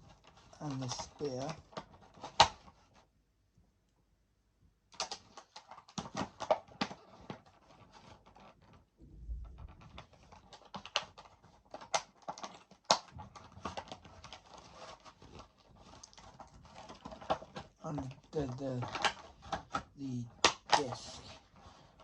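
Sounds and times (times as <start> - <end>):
plastic packaging rustling and clicking: 0.0 - 3.1, 4.9 - 22.0
dull low bump: 9.0 - 9.9.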